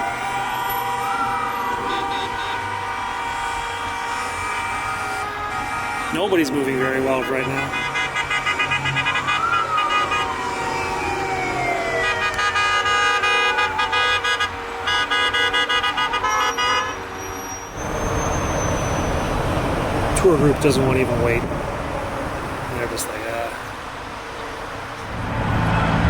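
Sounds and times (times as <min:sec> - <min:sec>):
traffic noise: 0:00.0 - 0:26.0
vehicle horns honking: 0:01.8 - 0:10.4, 0:12.0 - 0:19.4, 0:25.2 - 0:26.0.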